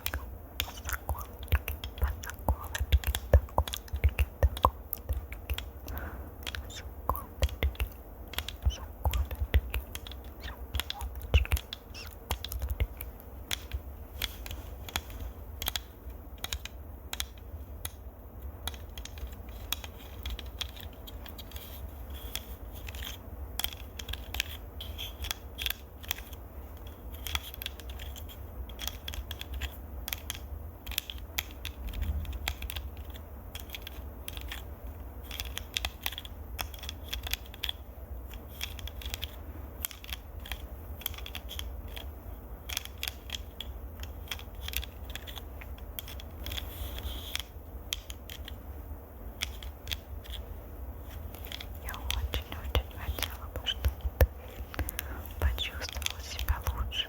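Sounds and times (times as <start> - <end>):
clicks and scratches on microphone: 51.1 - 57.0.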